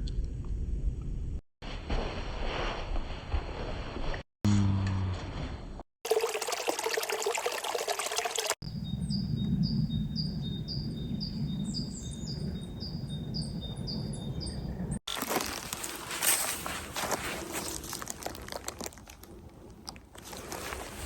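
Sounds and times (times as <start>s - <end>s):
songbird chirping: 8.7s - 15.0s
hiking noise: 14.6s - 21.0s.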